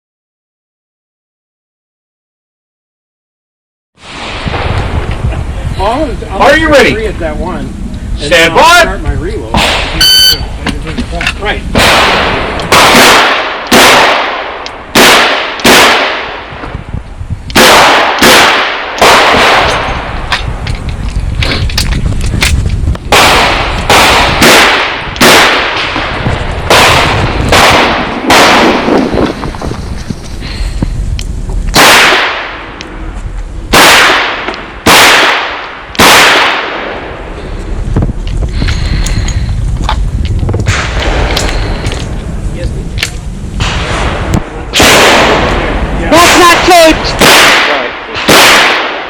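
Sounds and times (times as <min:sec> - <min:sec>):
revolver gunshots: 0:11.7 - 0:16.5, 0:17.6 - 0:20.1, 0:23.1 - 0:29.3, 0:31.7 - 0:32.8, 0:33.7 - 0:37.2, 0:43.6 - 0:49.0.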